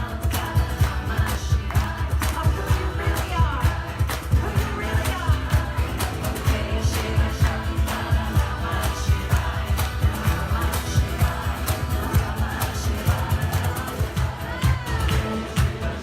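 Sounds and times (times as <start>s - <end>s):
quick drum beat: 0.0s - 16.0s.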